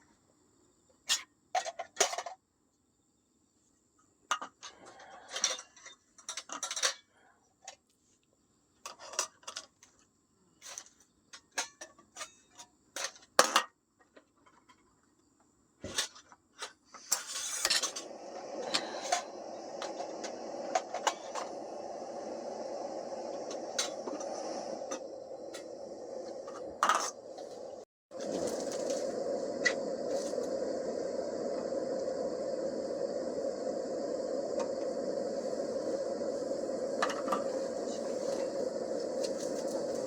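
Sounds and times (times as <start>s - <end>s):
steady hiss: 17.0s - 40.0s.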